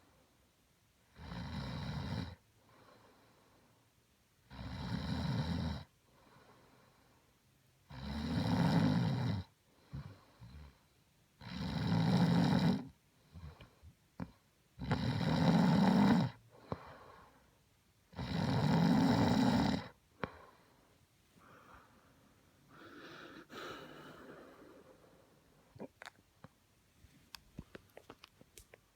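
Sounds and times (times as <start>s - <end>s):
woman snoring: 1.2s - 2.4s, 4.5s - 5.9s, 7.9s - 10.7s, 11.4s - 13.0s, 14.2s - 16.4s, 18.1s - 20.4s, 22.7s - 25.0s.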